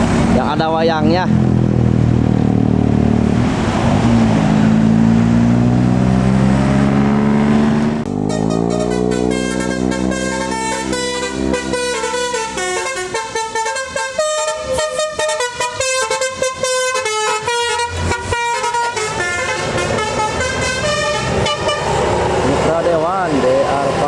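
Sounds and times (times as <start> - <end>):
bus engine running: 0.0 - 24.0
multi-tone bus horn tune: 7.7 - 22.2.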